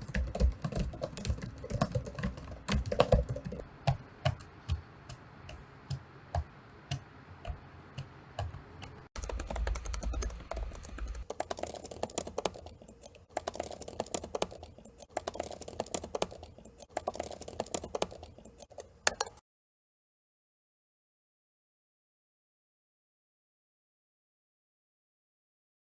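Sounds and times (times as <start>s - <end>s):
keyboard keys clicking: 0.0s - 19.4s.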